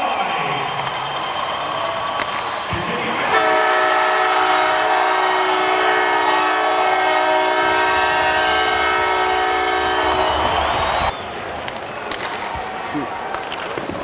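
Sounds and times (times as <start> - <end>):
air horn chord: 3.3 - 11.1.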